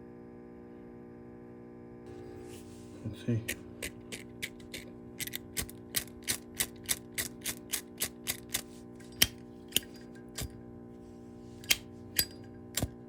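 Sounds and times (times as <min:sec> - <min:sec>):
lighter clicking: 0:03.8 - 0:10.6, 0:11.6 - 0:13.0.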